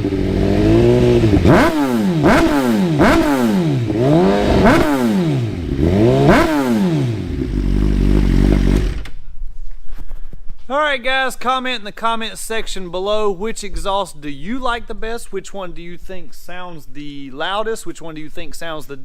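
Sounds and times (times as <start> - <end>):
motorcycle engine revving: 0.0 - 9.2.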